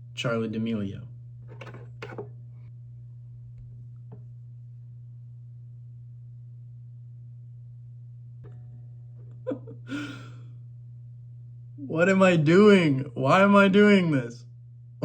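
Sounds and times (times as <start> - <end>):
steady low hum: 0.0 - 15.0
breath-like sound: 9.9 - 10.4.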